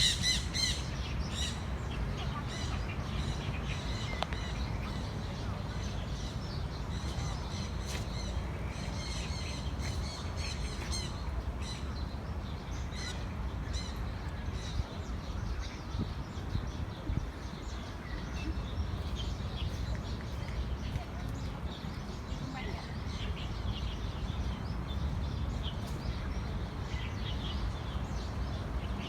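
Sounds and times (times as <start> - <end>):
birds chirping and squawking: 0.0 - 5.2.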